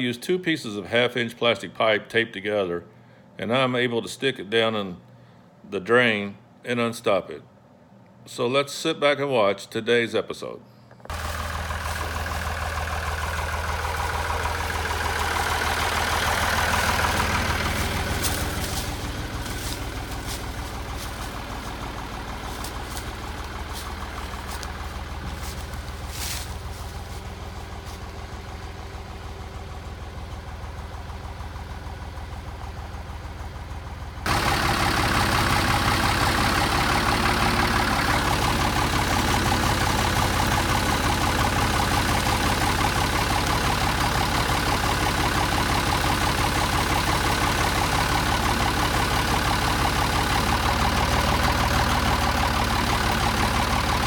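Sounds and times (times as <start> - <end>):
vehicle engine running: 11.1 - 54.0.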